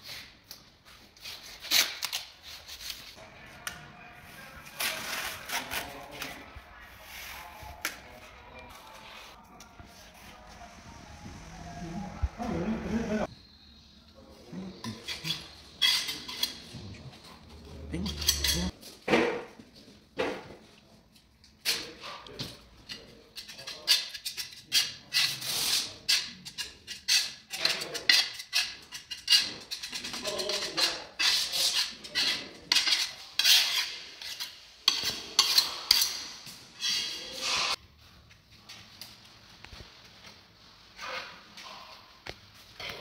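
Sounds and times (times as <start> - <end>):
hand tools clinking on hard surfaces: 18.0 - 18.7.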